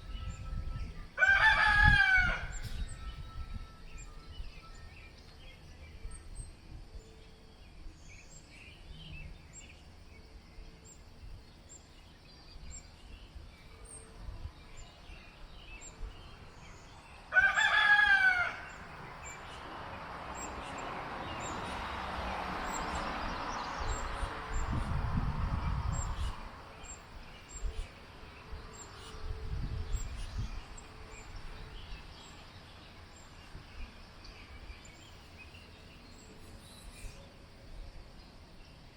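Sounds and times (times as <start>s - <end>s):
low rumbling on microphone: 0.0s - 4.6s, 21.4s - 28.0s, 28.6s - 32.0s
small birds chirping: 0.0s - 17.7s, 18.6s - 38.9s
rooster crowing: 1.2s - 3.3s, 17.3s - 19.0s.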